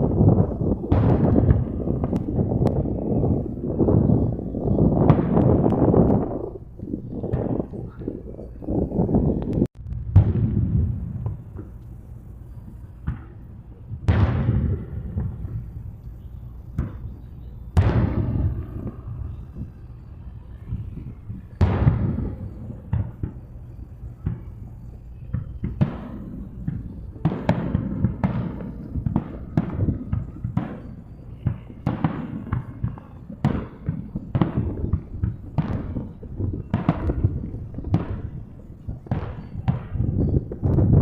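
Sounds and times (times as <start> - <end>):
fireworks shells bursting: 10.2 - 41.0.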